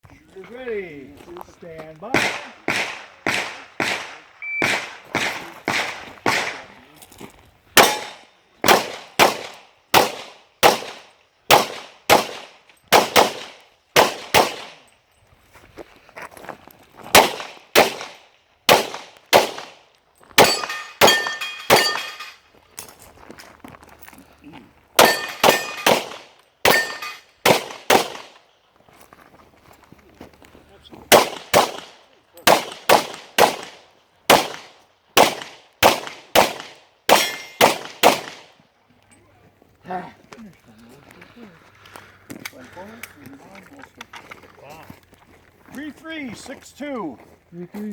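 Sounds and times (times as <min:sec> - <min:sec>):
rapid pistol fire: 0:02.2 - 0:06.6, 0:07.8 - 0:14.8, 0:17.2 - 0:19.8, 0:25.0 - 0:28.4, 0:31.1 - 0:38.5
bullets clanging on steel plates: 0:07.8 - 0:08.3, 0:20.4 - 0:22.4, 0:25.0 - 0:27.3, 0:37.1 - 0:37.6.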